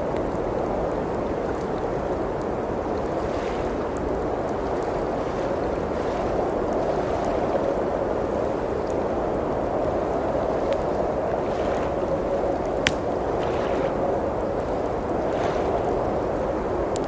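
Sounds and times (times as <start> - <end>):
blizzard wind blowing: 0.0 - 17.0
fireplace crackling: 0.0 - 17.0
sharp fire pop: 12.8 - 13.9.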